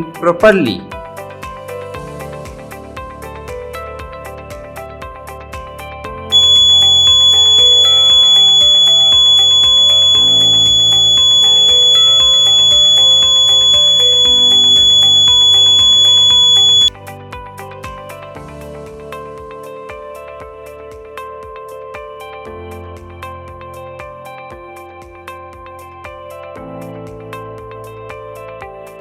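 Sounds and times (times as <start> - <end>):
smoke detector buzzer tone: 6.3 - 16.9.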